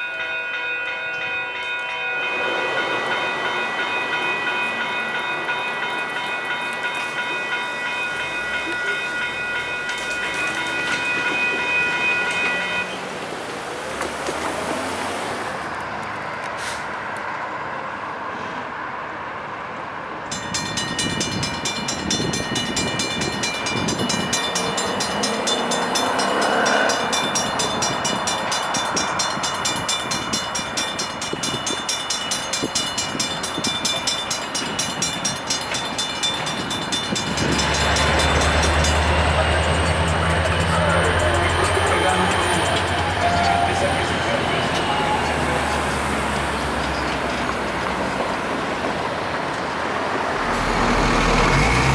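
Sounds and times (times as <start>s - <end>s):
railroad crossing warning bell: 0.0s - 13.2s, 20.2s - 51.9s
low engine drone: 50.2s - 51.9s.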